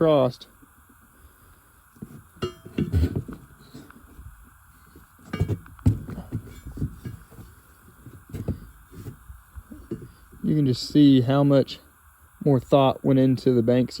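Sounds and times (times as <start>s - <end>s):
metal parts clunking and clinking: 5.3s - 5.7s.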